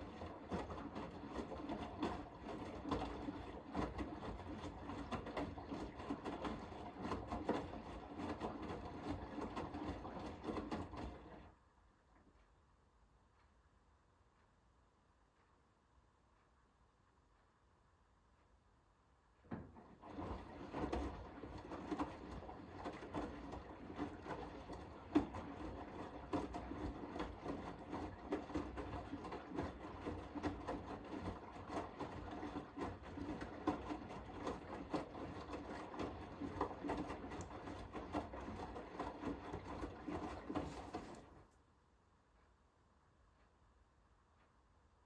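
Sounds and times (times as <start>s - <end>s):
wet laundry tumbling: 0.0s - 11.4s, 19.5s - 41.4s
washing machine motor hum: 0.0s - 12.1s, 19.4s - 41.5s.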